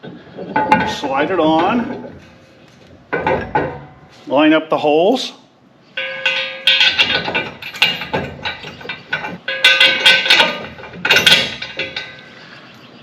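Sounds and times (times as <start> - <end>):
steel parts clanking and ringing: 0.4 - 4.2, 6.0 - 12.7.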